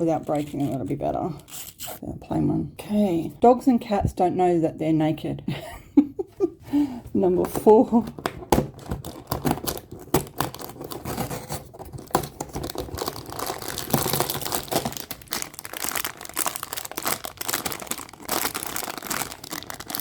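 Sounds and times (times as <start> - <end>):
packaging rustling and crackling: 8.2 - 20.0.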